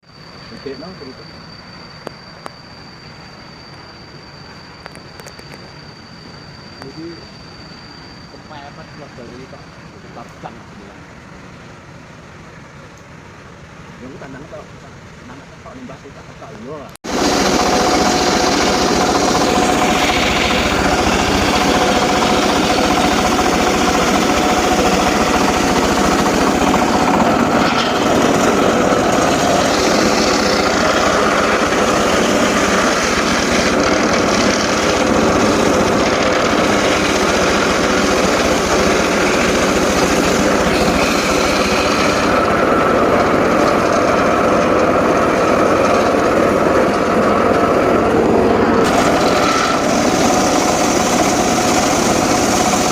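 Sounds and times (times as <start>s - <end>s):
engine-driven saw running: 15.3s - 52.9s.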